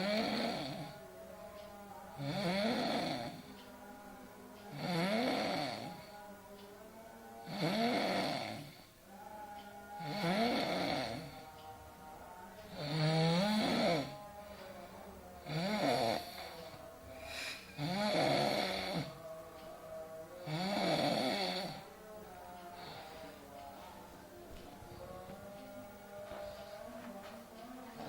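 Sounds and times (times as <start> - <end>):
person snoring loudly: 0.0 - 1.0, 2.2 - 3.5, 4.7 - 6.3, 7.4 - 8.9, 10.0 - 11.5, 12.7 - 14.3, 15.4 - 19.4, 20.4 - 21.9
quiet background music: 0.0 - 28.0.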